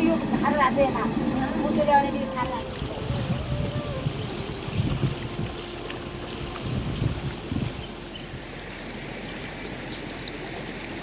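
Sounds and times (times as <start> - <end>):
running water rushing: 0.0 - 11.0
wind thumping on microphone: 2.4 - 5.7, 6.3 - 7.9.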